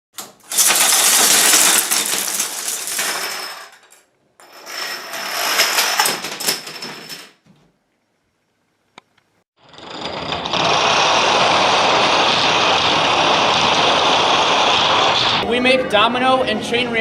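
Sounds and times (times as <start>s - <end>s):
dominoes toppling clatter: 0.2s - 4.0s, 4.7s - 7.3s.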